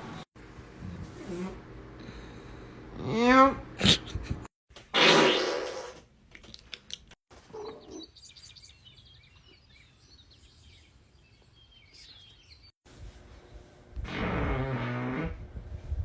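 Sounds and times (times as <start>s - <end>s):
faint bird chirping: 7.5s - 12.7s.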